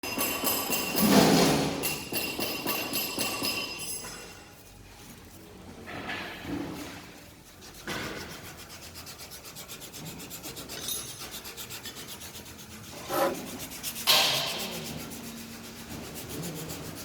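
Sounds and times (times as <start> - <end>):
rapid rasping: 7.6 - 17.0
loud scrapes: 9.9 - 17.0.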